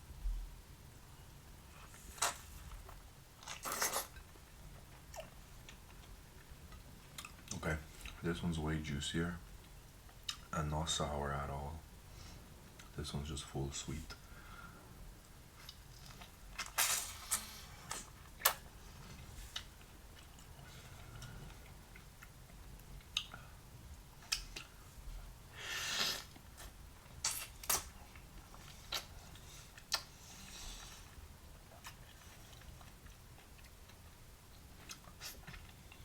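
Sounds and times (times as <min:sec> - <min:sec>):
wet mouth eating sounds: 0:03.4 - 0:04.3.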